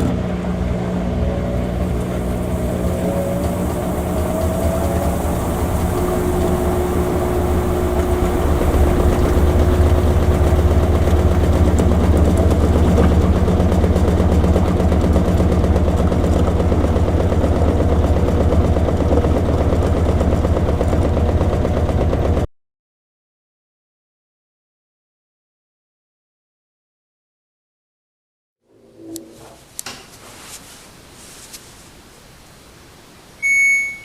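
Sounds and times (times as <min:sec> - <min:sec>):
washing machine humming: 0:00.0 - 0:22.4.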